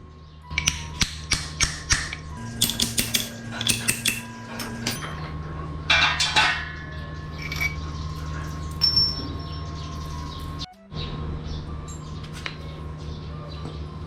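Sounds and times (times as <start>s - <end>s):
hammer striking metal: 0.5s - 9.6s
metal clattering on metal: 0.6s - 9.3s.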